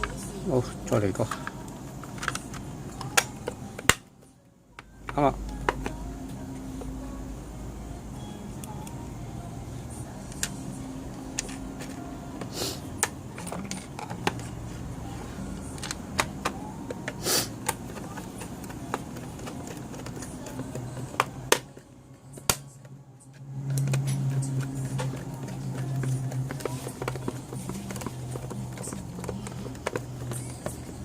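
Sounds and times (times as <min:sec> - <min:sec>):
plastic parts clicking and tapping: 0:00.9 - 0:04.1, 0:04.7 - 0:06.0, 0:11.3 - 0:14.6, 0:15.6 - 0:22.9, 0:23.6 - 0:31.0.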